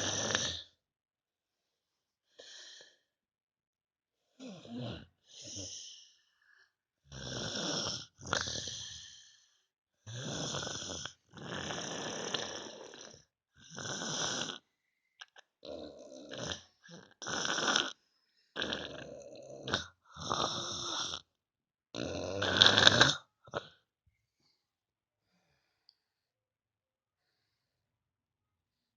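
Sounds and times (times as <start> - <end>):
heavy snoring: 0.0 - 0.7, 4.4 - 6.1, 7.1 - 9.4, 10.1 - 14.7, 15.6 - 21.3, 22.0 - 23.8.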